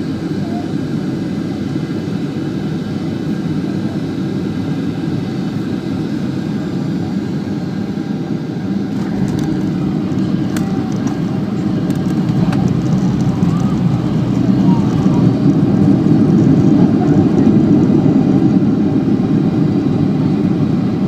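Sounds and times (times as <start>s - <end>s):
jet airliner landing: 0.0s - 21.0s
deep rumble: 8.9s - 20.7s.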